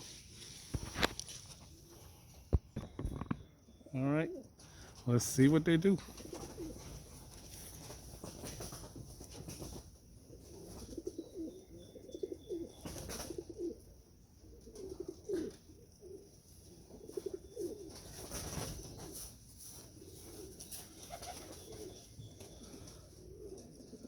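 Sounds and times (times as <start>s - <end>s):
pigeons cooing: 1.6s - 5.0s, 6.0s - 24.0s.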